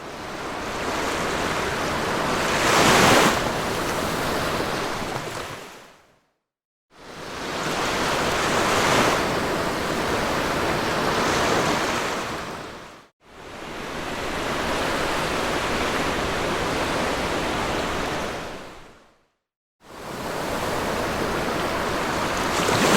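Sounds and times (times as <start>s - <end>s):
surf washing onto beach: 20.4s - 22.9s.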